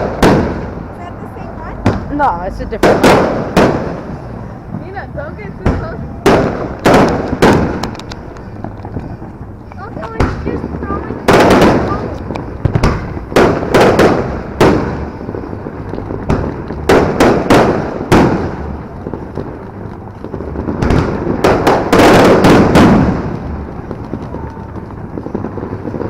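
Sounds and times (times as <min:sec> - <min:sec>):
fireworks banging: 0:00.0 - 0:26.0.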